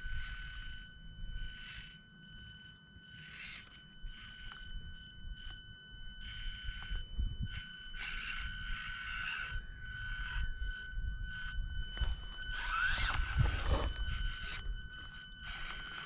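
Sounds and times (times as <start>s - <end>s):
small electric motor whirring: 0.0s - 16.0s
tyres scraping on rock: 12.0s - 14.6s.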